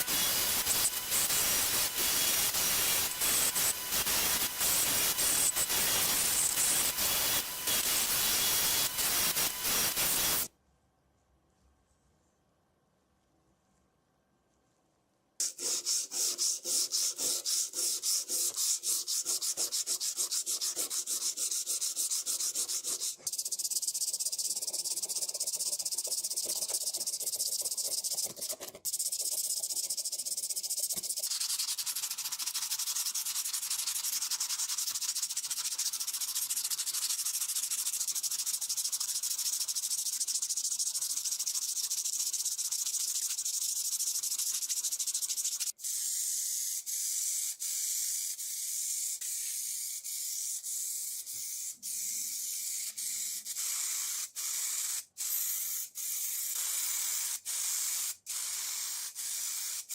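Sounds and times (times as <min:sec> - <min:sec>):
sanding on metal: 0:00.0 - 0:10.5, 0:15.4 - 0:45.8.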